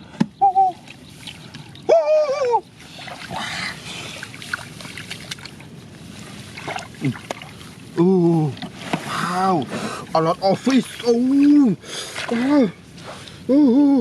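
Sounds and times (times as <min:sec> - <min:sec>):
short hooting calls: 0:00.4 - 0:00.8
hands splashing in muddy water: 0:02.7 - 0:09.8.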